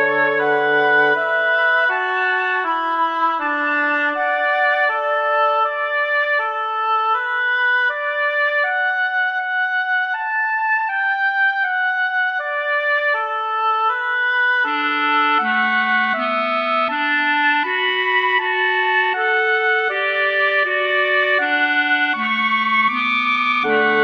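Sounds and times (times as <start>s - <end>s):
woodwind quartet playing: 0.0s - 7.6s, 23.6s - 24.0s.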